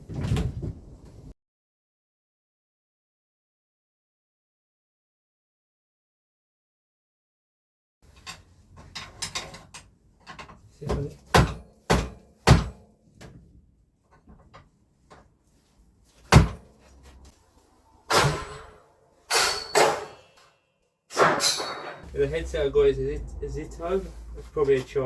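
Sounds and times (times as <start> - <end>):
clattering scrapes: 8.1 - 11.4, 21.1 - 22.2
bicycle parts knocking: 8.1 - 12.8.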